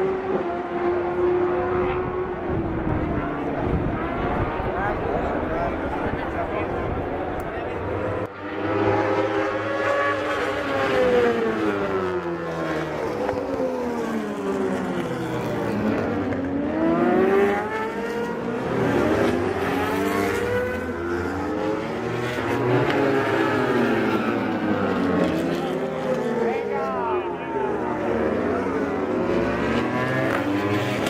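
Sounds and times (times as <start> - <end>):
racing motorcycles revving past: 8.1 - 26.6, 27.8 - 31.0.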